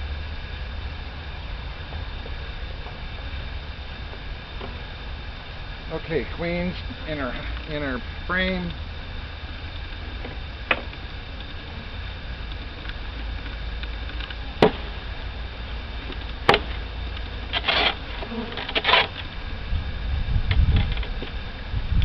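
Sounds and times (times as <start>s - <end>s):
honeybees buzzing: 0.0s - 22.0s
wooden hive parts scraping: 15.8s - 19.4s.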